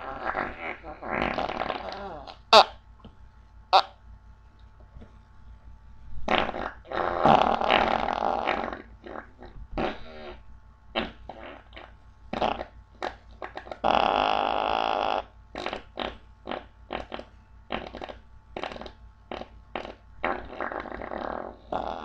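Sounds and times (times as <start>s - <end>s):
fart sound effects: 0.0s - 2.8s, 3.7s - 3.9s, 6.3s - 10.4s, 11.0s - 22.0s.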